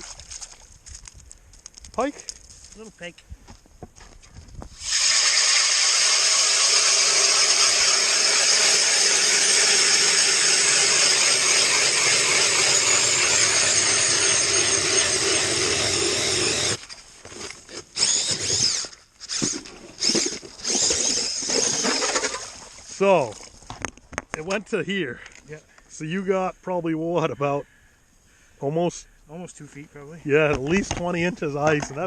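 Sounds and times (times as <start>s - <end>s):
drill boring through ice: 4.7s - 23.0s.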